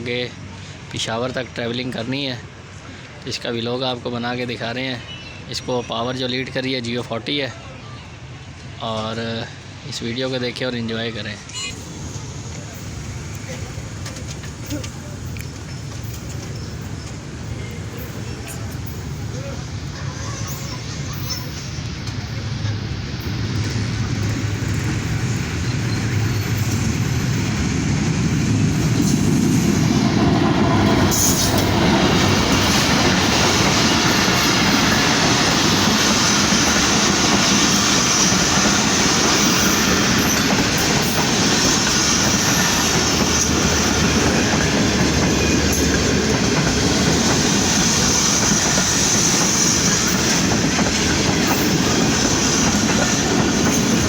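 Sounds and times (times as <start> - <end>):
train rolling on rails: 0.0 - 54.0
locomotive engine rumble: 11.7 - 54.0.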